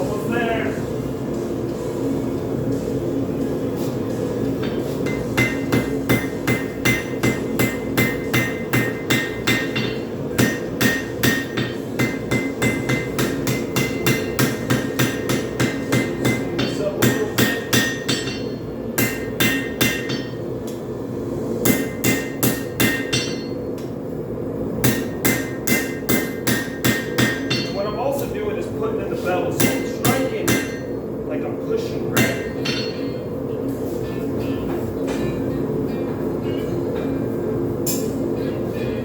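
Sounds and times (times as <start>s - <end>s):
hammer striking metal on anvil: 4.6s - 20.5s, 21.6s - 23.9s, 24.8s - 27.8s, 29.6s - 31.0s, 32.2s - 33.2s.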